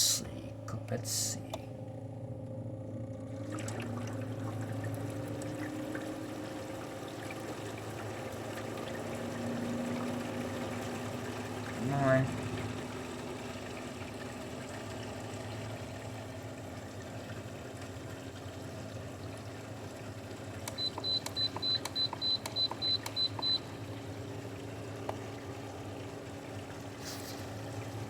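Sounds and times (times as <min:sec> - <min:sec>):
air conditioner fan humming: 0:00.0 - 0:28.0.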